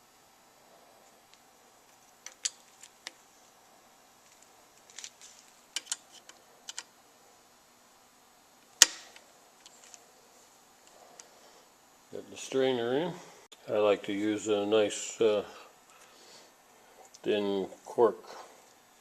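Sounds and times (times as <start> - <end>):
screwdriver clicks and ticks: 5.8 - 6.9
sharp loud click: 8.8 - 9.2.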